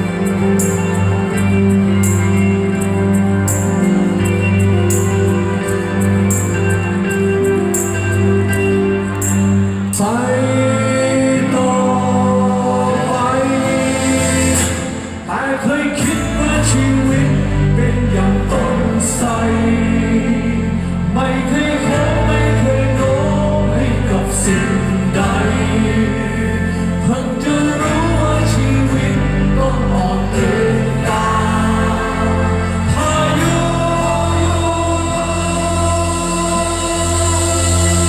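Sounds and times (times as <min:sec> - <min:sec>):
drums: 0:00.0 - 0:38.0
person singing: 0:00.0 - 0:38.0
rock band playing live: 0:00.0 - 0:38.0
electric bass: 0:15.8 - 0:38.0.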